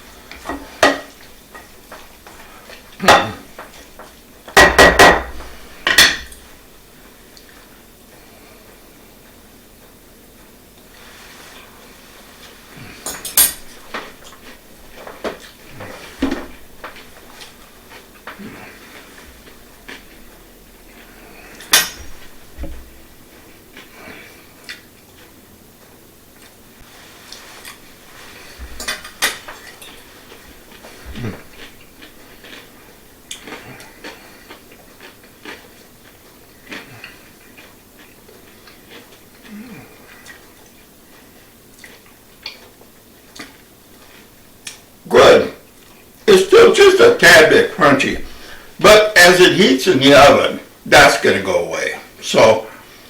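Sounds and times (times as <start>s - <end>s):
cutlery and cookware clattering: 0.3s - 2.0s, 3.0s - 6.5s, 13.0s - 14.2s, 21.6s - 22.1s, 28.7s - 30.0s
utensils clinking against dishes: 0.3s - 2.0s, 3.0s - 6.6s, 12.8s - 14.4s, 21.6s - 22.1s, 28.7s - 30.1s.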